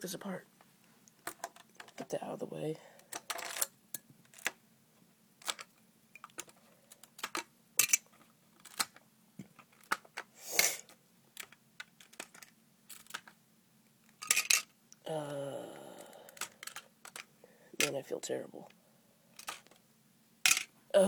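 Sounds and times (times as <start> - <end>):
plastic bricks clicking and rattling: 1.2 - 2.1, 3.1 - 4.6, 5.4 - 10.3, 11.3 - 13.4, 14.1 - 14.7, 16.0 - 18.0, 19.4 - 19.8, 20.5 - 20.7.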